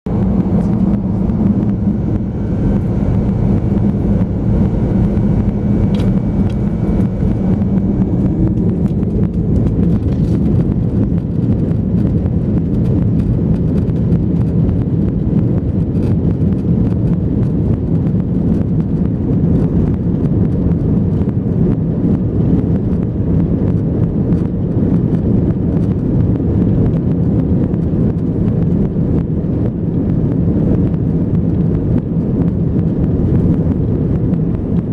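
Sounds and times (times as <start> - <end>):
jet engines running: 0.0 - 13.0.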